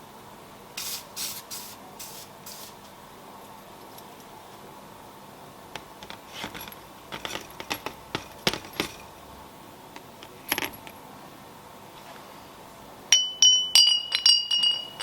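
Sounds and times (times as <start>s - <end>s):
small steel parts clinking: 5.8s - 9.1s, 10.0s - 11.0s, 13.1s - 15.0s
ringing metal strikes: 13.1s - 15.0s.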